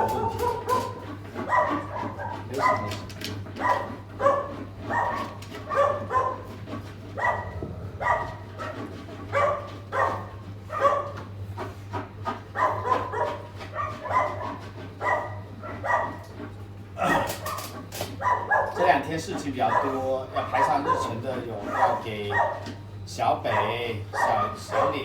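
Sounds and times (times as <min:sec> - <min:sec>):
steady low hum: 0:00.0 - 0:12.1
dogs barking: 0:00.0 - 0:25.0.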